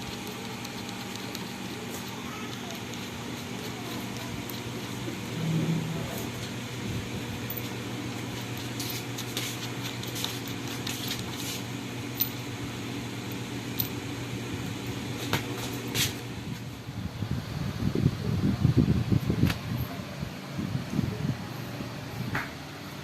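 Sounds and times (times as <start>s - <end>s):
handling clicks and rubbing: 0.0s - 4.8s, 7.5s - 12.4s
electric fan humming: 0.0s - 23.0s.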